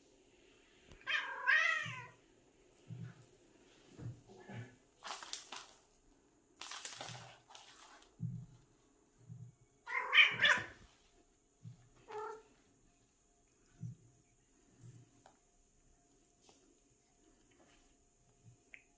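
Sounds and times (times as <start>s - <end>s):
cat meow-like cry: 1.0s - 2.2s, 9.9s - 10.8s, 12.1s - 12.4s.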